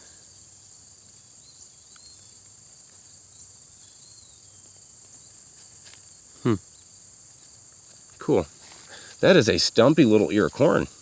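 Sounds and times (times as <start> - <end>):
faint chirps: 0.0 - 5.4, 6.1 - 7.6
crickets chorus: 0.0 - 11.0.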